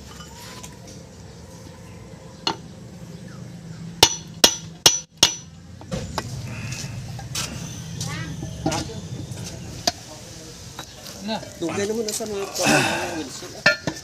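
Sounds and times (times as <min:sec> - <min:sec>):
low steady hum: 0:00.9 - 0:11.0
hammer striking metal: 0:04.0 - 0:05.5.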